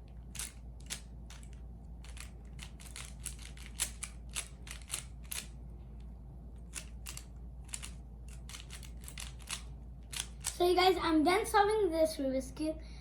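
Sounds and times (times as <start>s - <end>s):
puzzle cube layers clicking: 0.3s - 5.5s, 6.6s - 10.6s.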